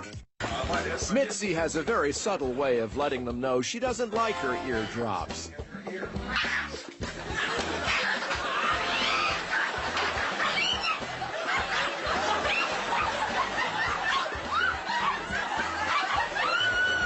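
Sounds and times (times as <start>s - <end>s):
audience laughing: 6.6s - 17.0s.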